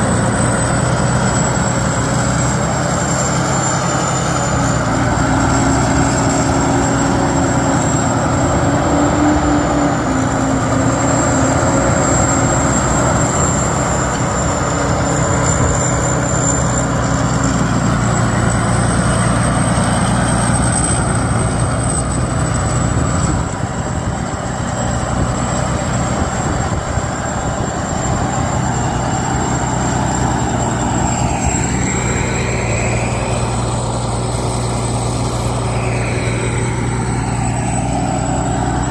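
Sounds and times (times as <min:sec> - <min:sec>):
combine harvester diesel engine: 0:00.0 - 0:38.9
thin high whine: 0:25.7 - 0:38.9.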